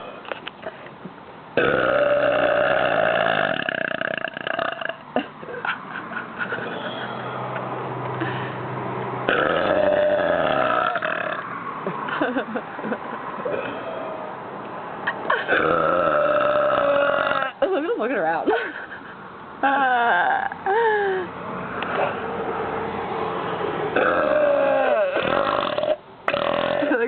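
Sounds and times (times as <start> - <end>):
person burping: 1.6 - 5.3, 9.3 - 11.4, 15.3 - 17.6, 24.0 - 27.0.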